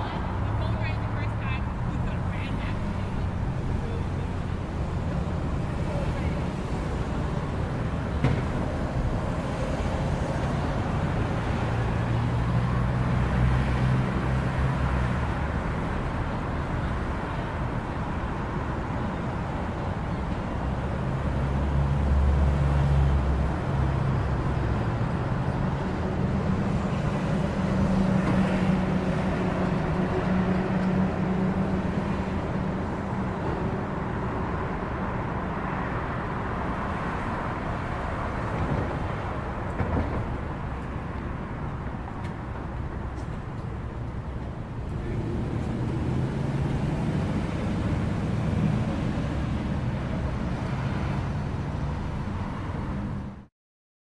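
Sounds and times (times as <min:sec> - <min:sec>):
vehicle engine rumble: 0:00.0 - 0:53.3
car and tyre noise: 0:02.4 - 0:53.5.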